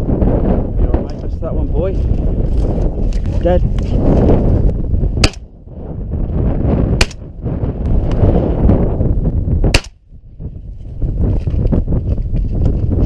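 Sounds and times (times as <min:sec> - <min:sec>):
wind rumble on microphone: 0:00.0 - 0:13.0
shotgun shots: 0:05.2 - 0:05.5, 0:09.7 - 0:10.0.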